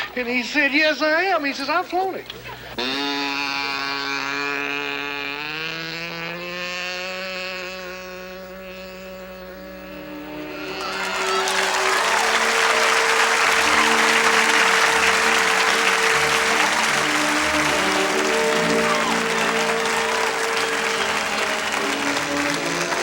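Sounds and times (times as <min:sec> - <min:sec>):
background music: 0:10.1 - 0:23.0
crowd applauding: 0:10.6 - 0:23.0.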